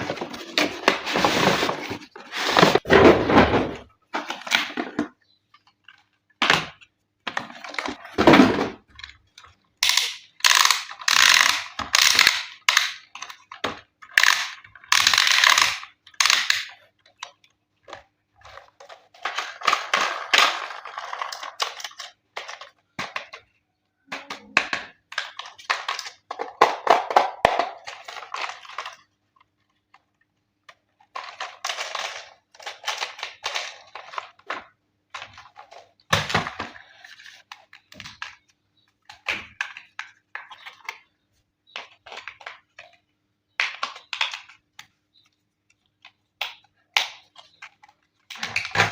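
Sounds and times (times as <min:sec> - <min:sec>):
plastic toy parts clicking: 0:08.9 - 0:23.5.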